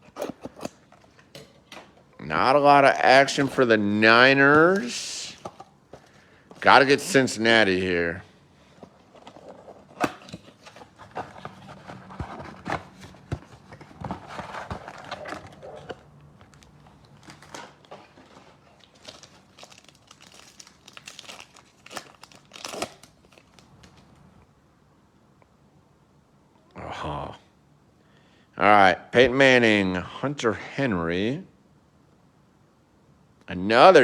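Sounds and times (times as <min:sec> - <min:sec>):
cards being handled: 0:04.4 - 0:06.7
foil wrappers crinkling and tearing: 0:14.3 - 0:24.1.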